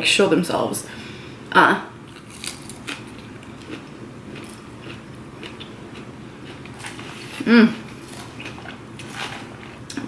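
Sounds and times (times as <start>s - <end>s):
person chewing salad: 2.1s - 10.0s
person humming: 7.4s - 7.8s.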